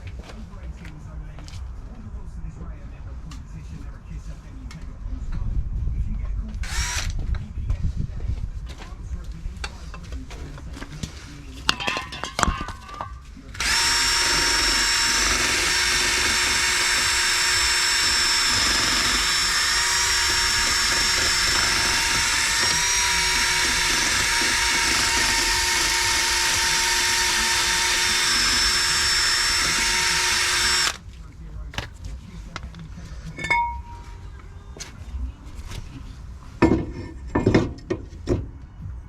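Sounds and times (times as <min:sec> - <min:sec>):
power drill running: 0:06.6 - 0:07.2, 0:13.5 - 0:31.0, 0:31.6 - 0:32.0
metallic clanks: 0:11.6 - 0:13.2.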